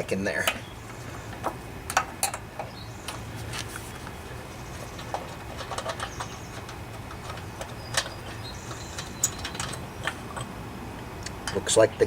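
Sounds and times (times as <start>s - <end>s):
wrench and metal parts clicking: 5.0s - 10.5s.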